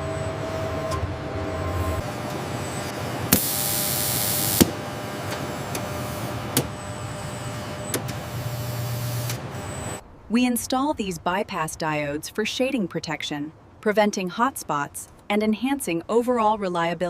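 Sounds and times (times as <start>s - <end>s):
machinery humming: 0.0s - 12.1s
loud air hiss: 3.3s - 6.5s.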